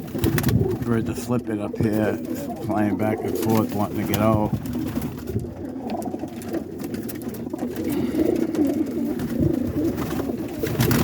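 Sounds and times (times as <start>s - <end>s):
pigeons cooing: 0.0s - 11.0s.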